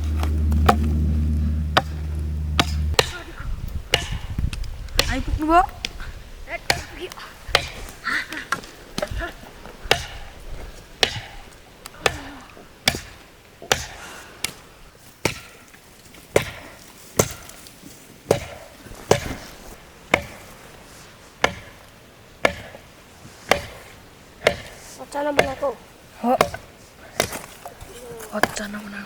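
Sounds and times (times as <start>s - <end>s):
blade chopping wood: 2.6s - 3.3s, 3.9s - 4.3s, 4.9s - 5.2s, 6.7s - 8.0s, 9.9s - 10.3s, 11.0s - 14.6s, 15.2s - 15.7s, 16.3s - 17.6s, 18.3s - 19.5s, 20.1s - 20.4s, 21.4s - 21.8s, 22.4s - 22.8s, 23.5s - 23.8s, 24.4s - 25.7s, 26.3s - 28.7s.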